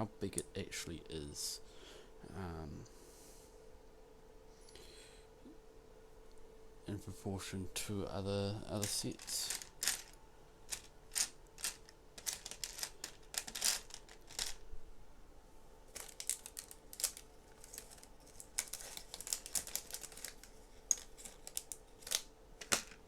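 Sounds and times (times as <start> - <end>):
plastic pieces clicking together: 8.8 - 14.6, 15.9 - 23.0.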